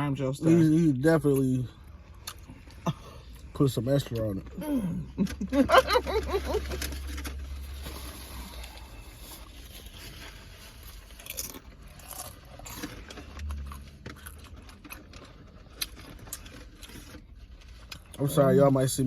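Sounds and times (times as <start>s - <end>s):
low steady hum: 0.0s - 19.0s
chewing: 6.3s - 18.2s.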